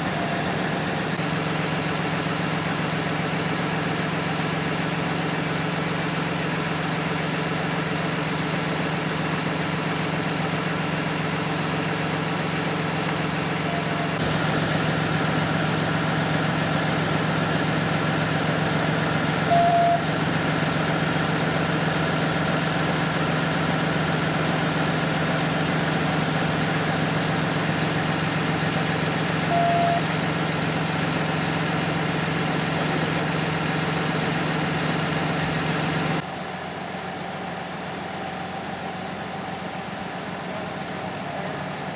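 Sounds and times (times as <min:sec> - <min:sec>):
large vehicle engine idling: 0:00.0 - 0:41.9
short high beep: 0:19.5 - 0:20.0, 0:29.5 - 0:30.0.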